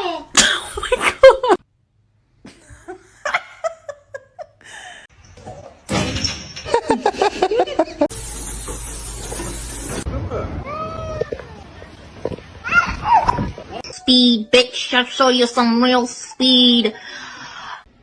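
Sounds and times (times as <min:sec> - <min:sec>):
people laughing: 0:06.7 - 0:08.1.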